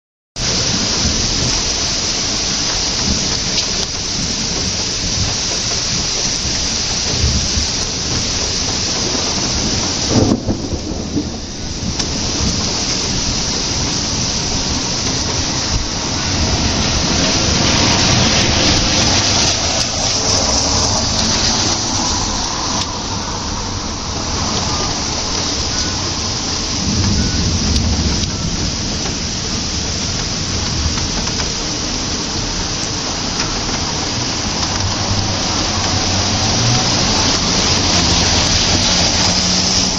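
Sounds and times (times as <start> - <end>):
heavy rain pouring: 0.4 - 39.9
loud thunder crack: 0.4 - 39.9
thunder rumbling: 0.4 - 39.9.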